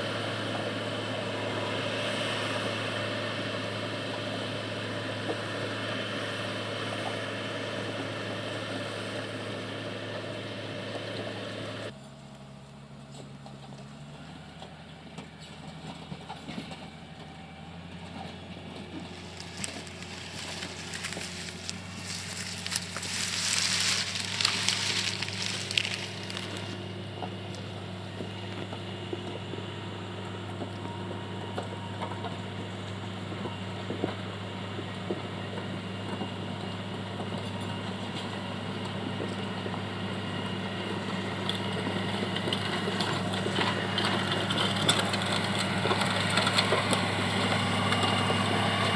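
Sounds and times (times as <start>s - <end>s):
diesel engine running: 0.0s - 48.9s
rushing crackling noise: 19.1s - 26.8s.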